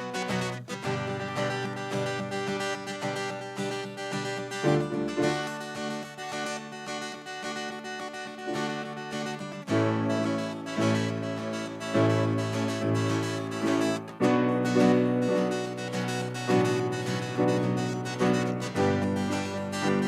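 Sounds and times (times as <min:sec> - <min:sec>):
keyboard chords: 0:00.0 - 0:20.0
plucked notes: 0:08.5 - 0:20.0.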